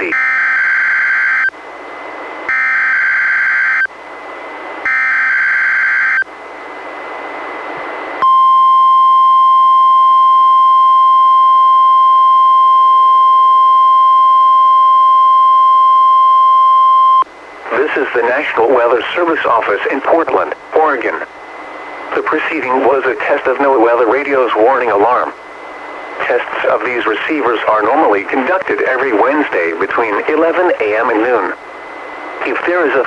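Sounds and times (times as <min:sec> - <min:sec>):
steady warning alarm tone: 0:00.0 - 0:06.3, 0:08.2 - 0:17.8
radio hiss: 0:17.5 - 0:33.0.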